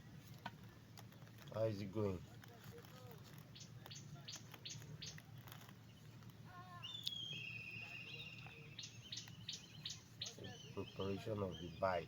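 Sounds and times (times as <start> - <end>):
bird calling: 3.3 - 12.0.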